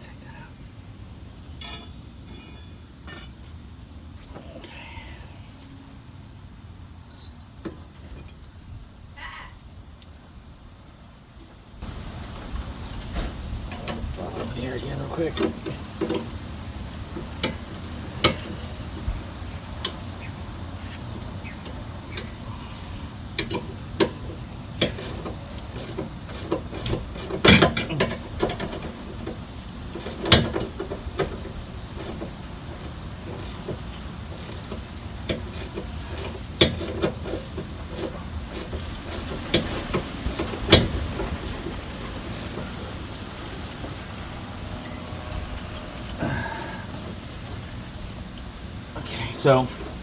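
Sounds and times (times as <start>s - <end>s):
metallic clanks of tools: 1.6s - 3.3s, 8.0s - 8.5s, 24.8s - 28.9s
hand ratchet clicking: 17.4s - 18.5s, 23.4s - 29.4s, 30.0s - 41.7s, 42.3s - 42.6s.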